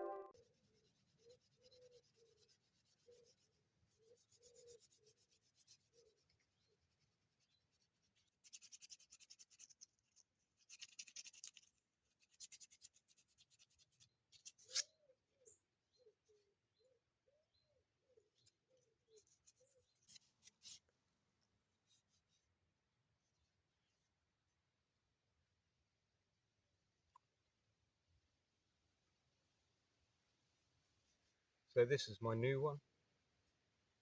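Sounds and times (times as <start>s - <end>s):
soft chirp-like tones: 0.0s - 0.5s.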